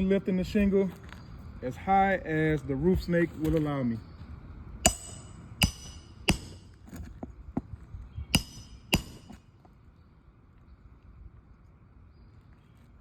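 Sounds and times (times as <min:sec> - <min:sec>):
hammer striking nails: 0:04.9 - 0:06.8, 0:08.4 - 0:09.4.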